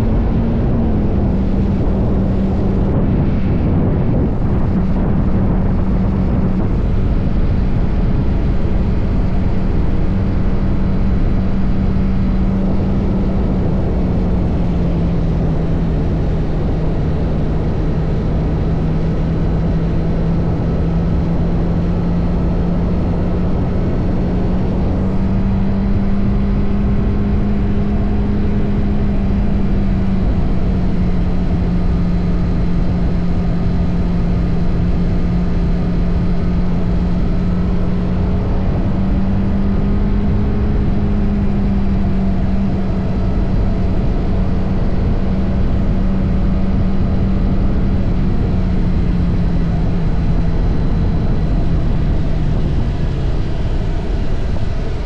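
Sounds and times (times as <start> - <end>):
motorcycle engine and exhaust: 0.0 - 55.0
wind and road noise: 0.0 - 55.0.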